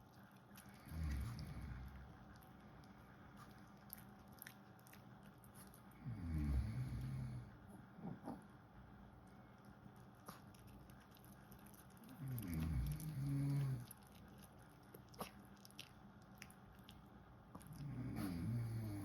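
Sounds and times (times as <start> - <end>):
pet snoring: 6.0 - 8.2, 12.2 - 13.8, 17.8 - 19.0.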